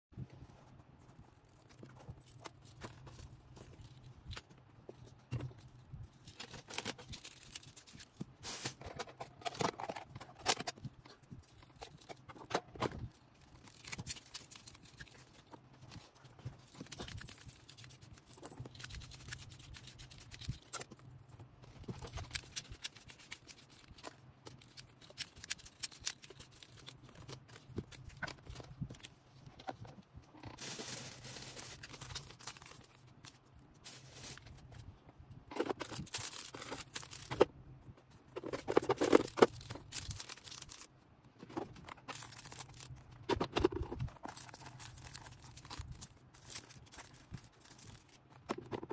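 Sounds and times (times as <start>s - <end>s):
packaging rustling: 30.6s - 34.8s, 35.6s - 37.5s, 38.5s - 40.9s, 42.0s - 48.4s.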